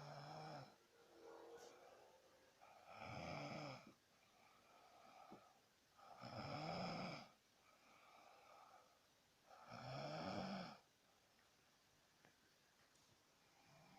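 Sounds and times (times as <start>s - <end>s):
boy snoring: 0.0s - 0.8s, 2.7s - 4.0s, 6.1s - 7.4s, 9.6s - 10.9s
soft breath: 0.0s - 6.2s, 7.5s - 9.7s.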